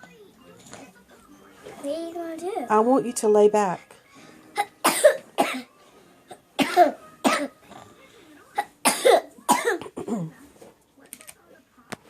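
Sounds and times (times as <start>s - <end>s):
child coughing: 4.5s - 5.7s, 6.3s - 7.6s, 8.6s - 10.3s.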